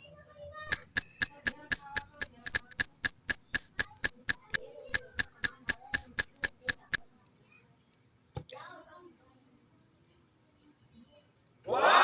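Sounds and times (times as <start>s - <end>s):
rapid ringing ticking clicks: 0.7s - 7.1s.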